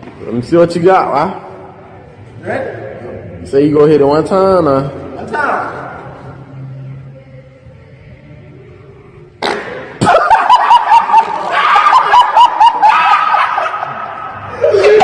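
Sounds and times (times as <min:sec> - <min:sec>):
high-pitched laughter: 0:10.0 - 0:15.0.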